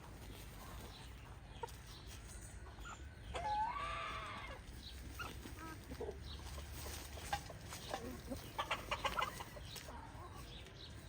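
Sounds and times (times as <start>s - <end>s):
chickens clucking: 0.0s - 11.0s
chicken drawn-out call: 3.3s - 5.3s.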